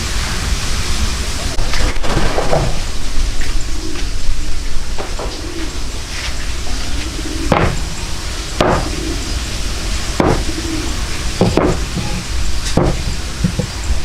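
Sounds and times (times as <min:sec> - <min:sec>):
steady low rumble: 0:00.0 - 0:14.0
hammer striking wood: 0:08.6 - 0:08.9, 0:10.2 - 0:10.4, 0:11.4 - 0:12.1, 0:12.8 - 0:13.7.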